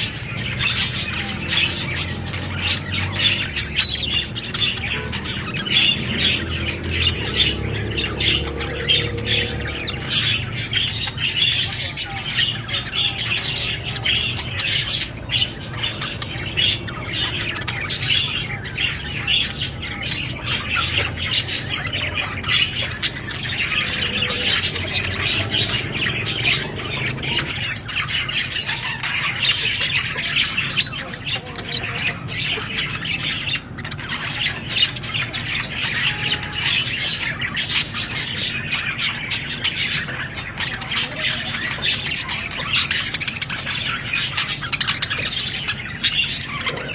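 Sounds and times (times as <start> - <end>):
budgerigars chirping and squawking: 0.0 - 46.9.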